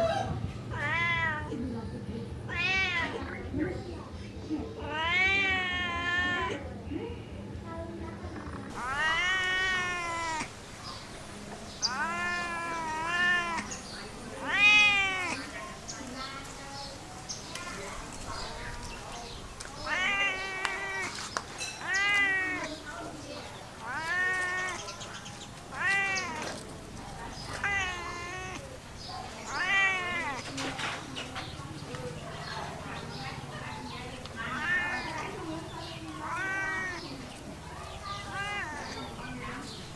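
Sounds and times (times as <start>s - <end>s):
cat meowing: 0.7s - 1.5s, 2.5s - 3.3s, 4.9s - 6.6s, 8.7s - 26.6s, 27.5s - 30.8s, 34.2s - 39.9s.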